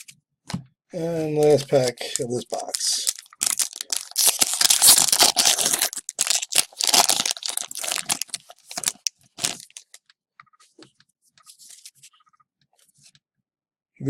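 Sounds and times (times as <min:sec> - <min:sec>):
wrapper tearing and crinkling: 0:02.0 - 0:10.0.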